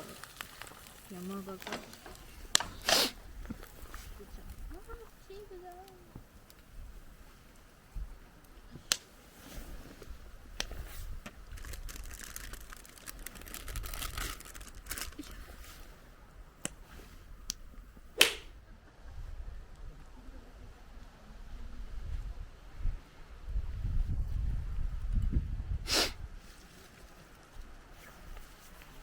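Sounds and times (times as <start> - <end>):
campfire crackling and popping: 0.0 - 9.3, 9.9 - 16.0, 16.6 - 18.6
fire hissing: 0.0 - 11.6, 25.8 - 26.2
wind rumble on microphone: 2.2 - 5.5, 16.8 - 26.6.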